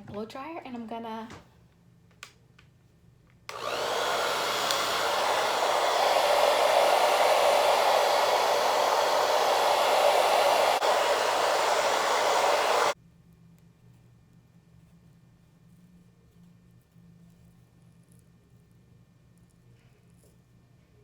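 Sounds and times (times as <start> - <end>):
blow dryer running: 3.5 - 13.0.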